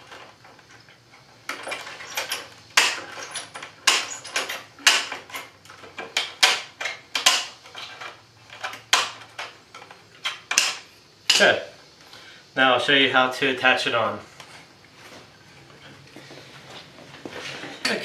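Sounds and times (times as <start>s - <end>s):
metal shears snipping wire mesh: 1.5s - 7.9s, 10.2s - 11.6s.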